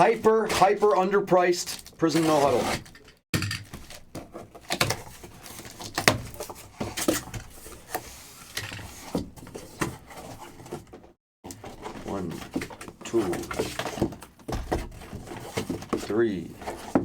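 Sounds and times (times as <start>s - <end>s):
boxes knocking on table: 12.4s - 17.0s.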